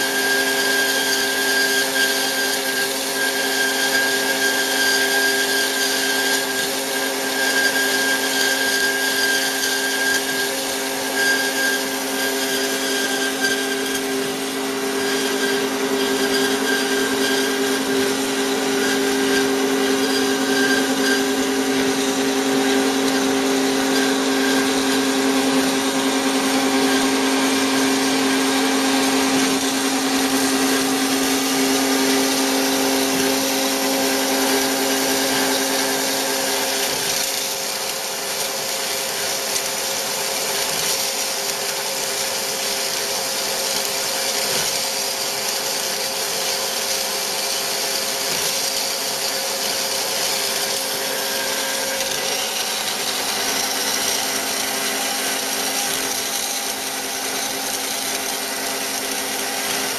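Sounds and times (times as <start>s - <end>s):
bandsaw cutting metal: 0.0s - 59.9s.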